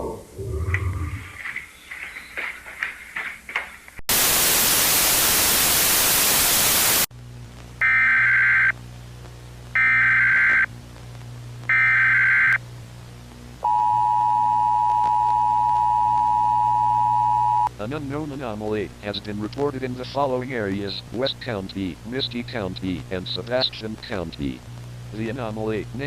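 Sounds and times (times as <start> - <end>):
loud static hiss: 4.1 - 26.0
two-tone attention signal: 13.6 - 17.7.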